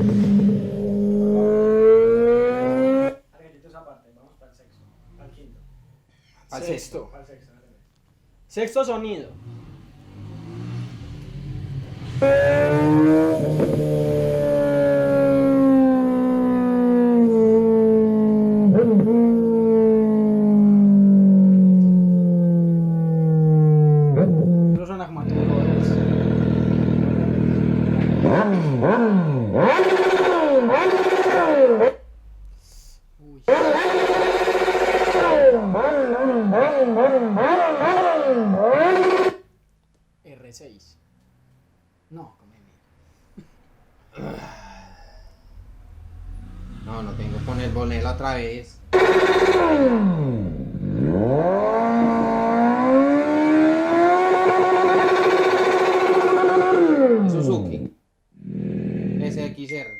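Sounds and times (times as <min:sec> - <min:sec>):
motorcycle engine idling and revving: 0:00.0 - 0:03.2, 0:09.3 - 0:32.5, 0:33.4 - 0:39.6, 0:45.4 - 0:57.3, 0:58.4 - 0:59.5.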